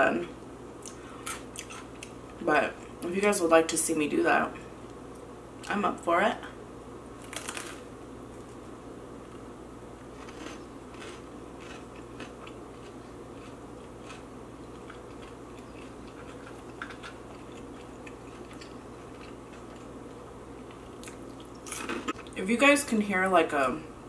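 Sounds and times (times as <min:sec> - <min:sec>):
person chewing crunchy snacks: 0:10.2 - 0:19.9.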